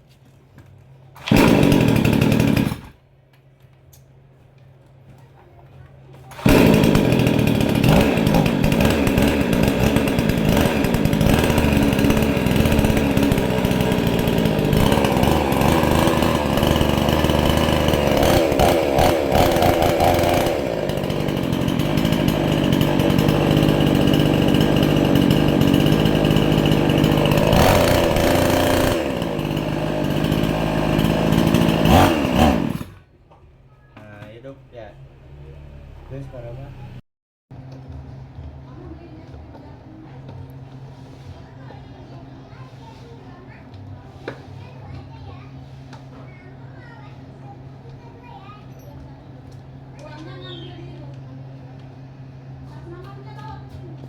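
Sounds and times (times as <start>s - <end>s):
chainsaw engine revving: 1.2s - 3.0s, 6.3s - 33.0s.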